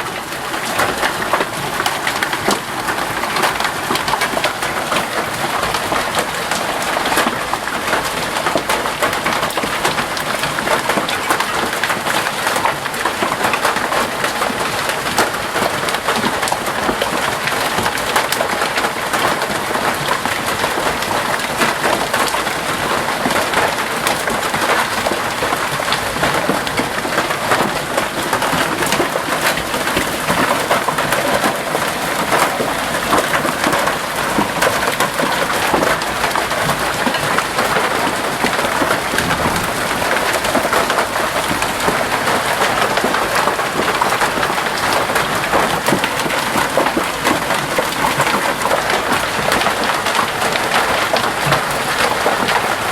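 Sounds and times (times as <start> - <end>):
hailstones clattering: 0.1 - 52.9.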